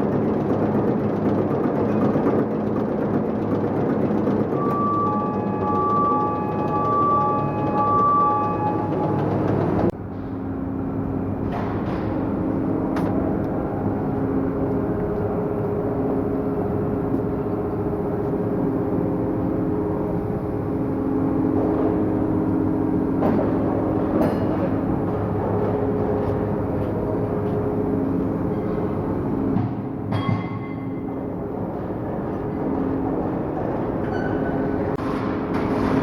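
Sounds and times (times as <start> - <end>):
diesel engine running: 9.8 - 29.7.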